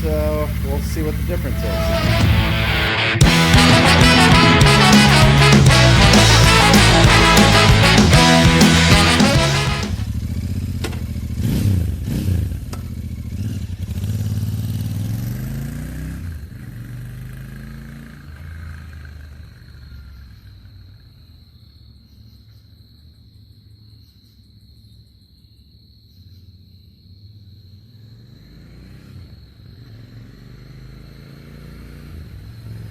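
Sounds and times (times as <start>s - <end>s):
motorcycle engine revving: 0.0s - 20.1s, 27.9s - 32.9s.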